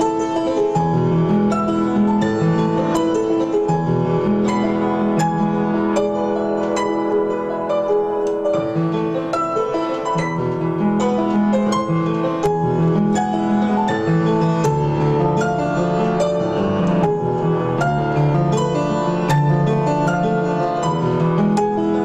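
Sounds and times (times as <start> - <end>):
solo piano melody: 0.0 - 22.0.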